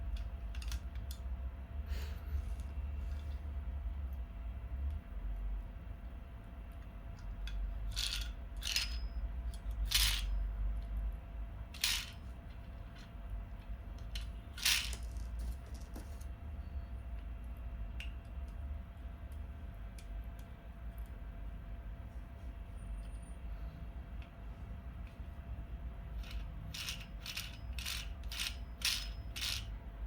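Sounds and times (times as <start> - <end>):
low steady hum: 0.0 - 30.0
toy revolver plastic clicks: 26.2 - 29.7.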